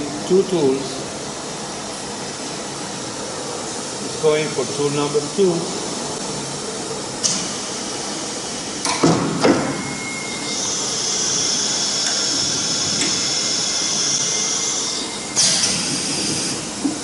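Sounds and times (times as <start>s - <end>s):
pneumatic clunks: 7.2s - 7.8s, 8.8s - 17.0s.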